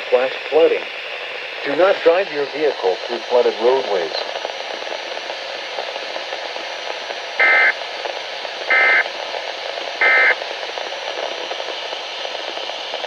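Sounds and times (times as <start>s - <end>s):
radio static hiss: 0.0s - 13.0s
two-tone digital data bursts: 7.4s - 7.7s, 8.7s - 9.0s, 10.0s - 10.4s.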